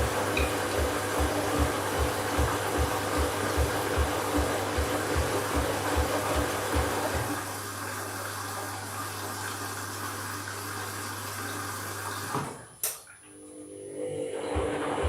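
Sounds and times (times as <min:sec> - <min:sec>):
washing machine filling with water: 0:00.0 - 0:15.0.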